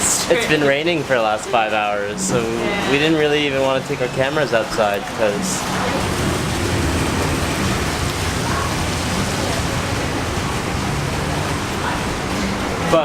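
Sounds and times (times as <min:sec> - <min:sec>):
heavy rain hissing: 0:00.0 - 0:13.0.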